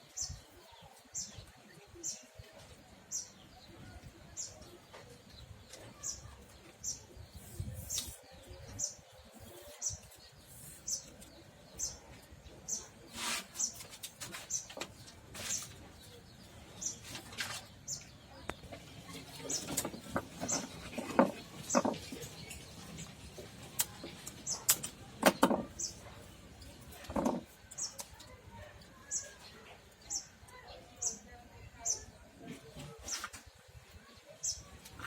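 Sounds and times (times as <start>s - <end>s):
handling knocks and clicks: 19.4s - 26.0s, 26.6s - 28.3s.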